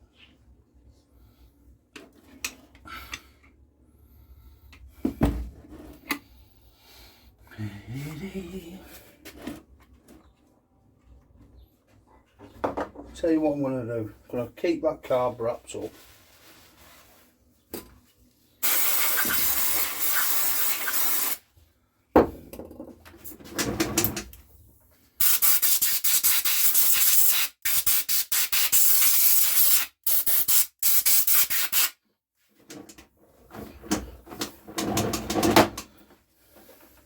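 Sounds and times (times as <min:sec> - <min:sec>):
aerosol can spray bursts: 0:18.6 - 0:21.4, 0:25.2 - 0:32.0.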